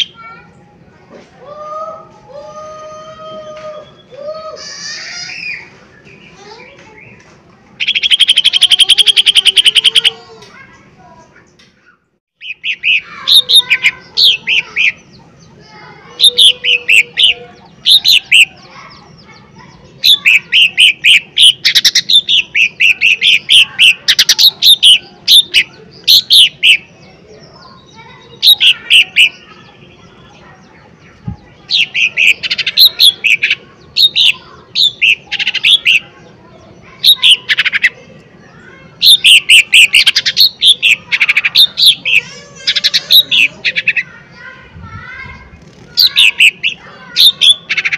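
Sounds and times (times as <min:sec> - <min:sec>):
bird singing whistled phrases: 0:03.7 - 0:04.2, 0:07.8 - 0:10.2, 0:20.0 - 0:26.9, 0:31.7 - 0:36.2, 0:37.0 - 0:38.0, 0:39.0 - 0:44.1, 0:46.0 - 0:47.9.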